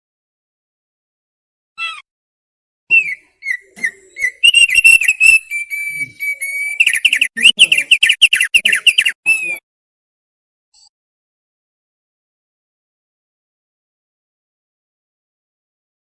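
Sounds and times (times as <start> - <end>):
bird singing: 2.9 - 9.6.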